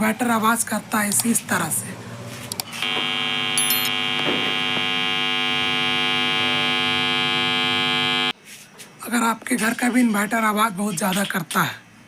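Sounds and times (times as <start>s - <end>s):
inverter electrical buzz and whine: 2.5s - 8.4s.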